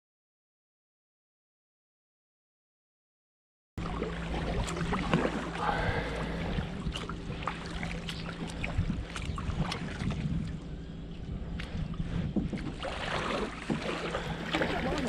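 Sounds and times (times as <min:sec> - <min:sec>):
boat motor running: 0:03.8 - 0:15.0
water noise: 0:03.8 - 0:15.0
wind noise: 0:06.2 - 0:15.0.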